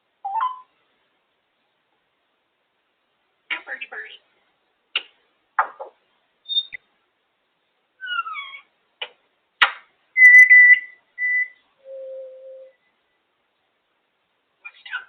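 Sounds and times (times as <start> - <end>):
parrot whistling: 8.0 - 8.6, 10.2 - 12.8.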